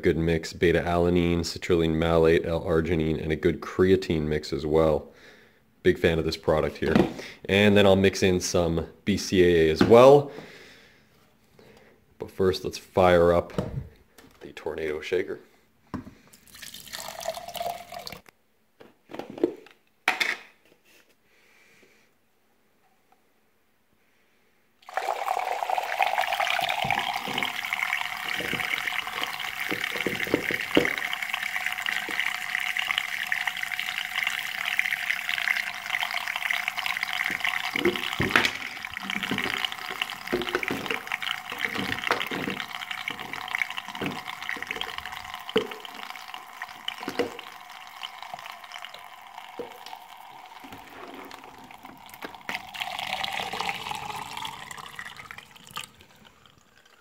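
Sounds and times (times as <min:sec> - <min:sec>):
liquid sloshing knocks: 0:26.2 - 0:32.4, 0:35.8 - 0:46.2.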